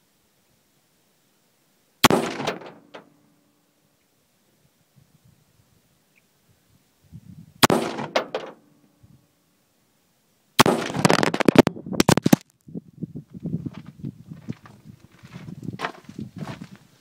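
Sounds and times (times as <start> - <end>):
rapid rifle fire: 2.0 - 2.8, 7.6 - 8.5, 10.6 - 11.7
rifle shots with echo: 2.0 - 3.1, 7.6 - 8.6, 10.6 - 11.6.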